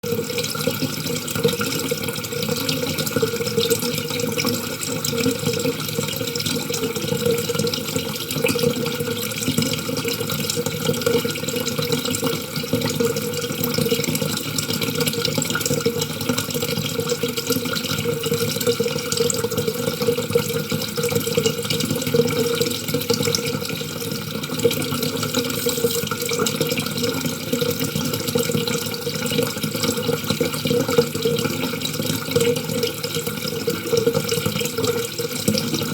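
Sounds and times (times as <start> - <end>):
water running: 23.7 - 26.7.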